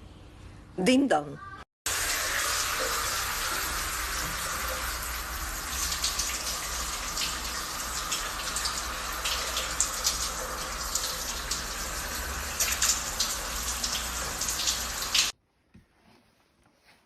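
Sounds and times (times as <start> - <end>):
tap water running into bathtub: 1.9 - 15.4.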